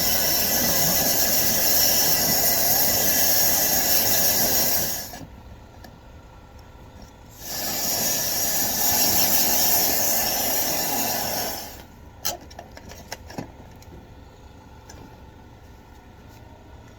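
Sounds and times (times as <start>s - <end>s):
rush of air from vent cleaner: 0.0s - 5.2s, 7.4s - 11.9s.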